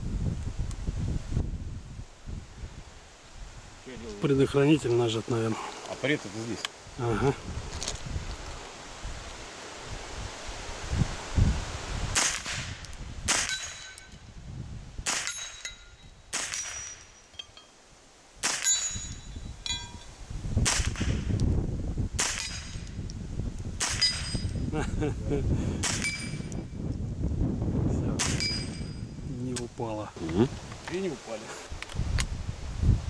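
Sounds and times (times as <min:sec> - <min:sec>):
gunshots: 0:12.2 - 0:13.9, 0:15.0 - 0:15.5, 0:16.3 - 0:17.0, 0:18.4 - 0:18.9, 0:20.6 - 0:21.2, 0:25.8 - 0:26.3, 0:28.2 - 0:28.6
steel target plate clanging: 0:12.8 - 0:14.2, 0:15.1 - 0:17.8, 0:18.4 - 0:20.1, 0:23.8 - 0:24.6, 0:28.2 - 0:29.1.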